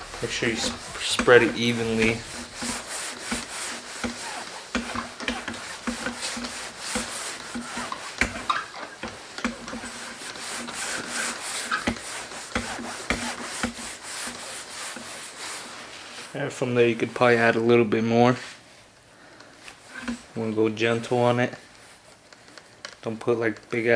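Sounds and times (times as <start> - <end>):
pad rubbing compound on lens: 0.0 - 8.7.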